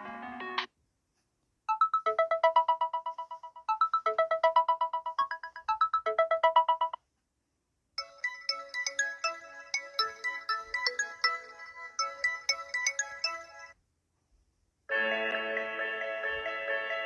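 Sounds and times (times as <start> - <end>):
different phone ringtone: 1.7 - 7.0, 8.0 - 13.8
phone ringtone melody: 1.7 - 7.0, 8.0 - 13.8.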